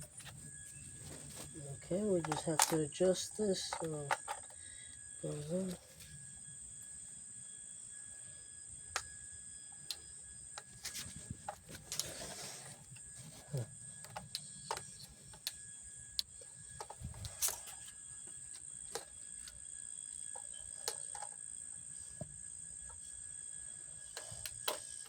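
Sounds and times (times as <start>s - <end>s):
steady high-pitched tone: 0.0s - 24.4s
metal and plastic parts clicking: 2.2s - 3.0s, 3.6s - 4.6s.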